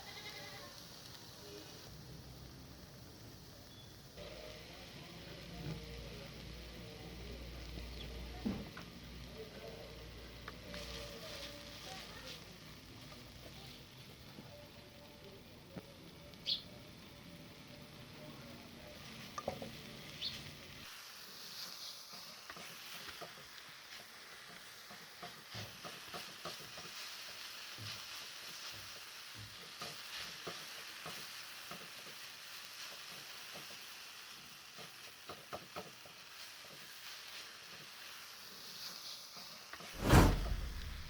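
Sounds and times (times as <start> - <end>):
food sizzling in frying pan: 0.0 - 41.0.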